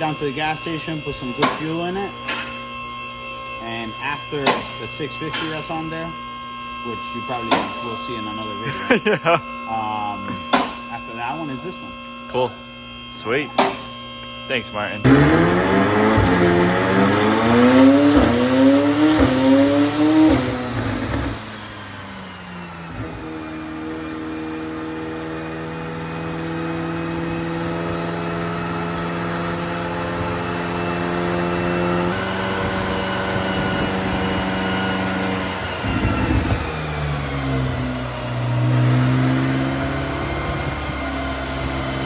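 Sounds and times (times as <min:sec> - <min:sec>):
car engine accelerating through gears: 0:15.0 - 0:42.0.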